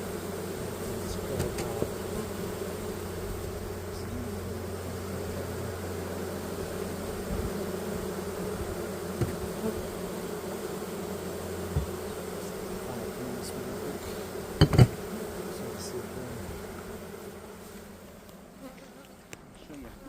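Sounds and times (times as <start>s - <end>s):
honeybees buzzing: 0.0s - 20.0s
sharp knocks: 9.2s - 9.4s, 14.6s - 15.0s.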